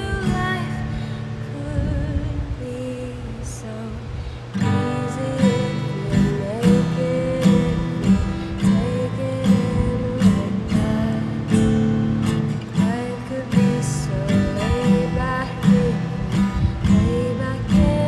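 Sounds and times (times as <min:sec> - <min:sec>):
acoustic guitar strumming: 0:00.0 - 0:02.0, 0:04.5 - 0:18.0
person singing: 0:04.6 - 0:11.8, 0:12.8 - 0:18.0.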